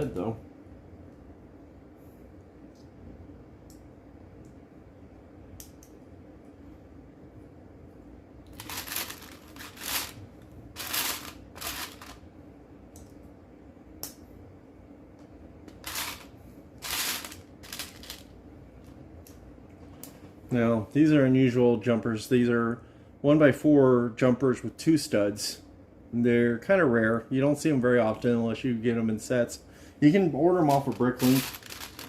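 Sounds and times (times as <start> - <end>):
plastic toy bricks rattling: 8.6 - 10.2, 10.8 - 12.2, 15.9 - 18.2, 30.7 - 32.0.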